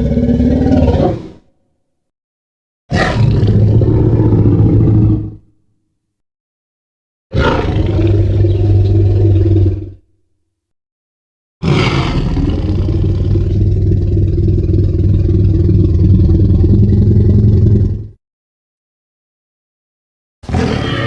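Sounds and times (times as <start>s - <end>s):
monster roar: 11.6s - 18.0s, 20.4s - 21.0s.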